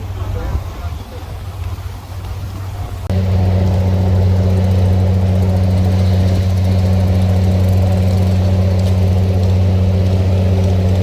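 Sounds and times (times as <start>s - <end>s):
boat engine droning: 0.0s - 11.0s.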